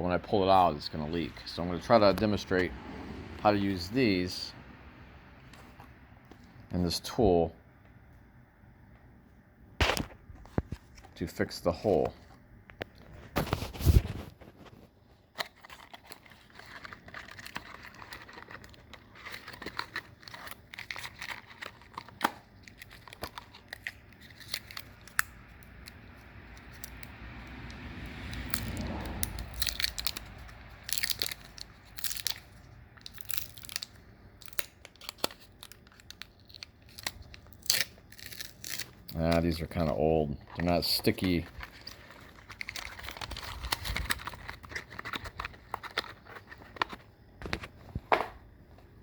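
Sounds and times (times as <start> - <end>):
packaging crinkling and tearing: 12.8 - 48.0.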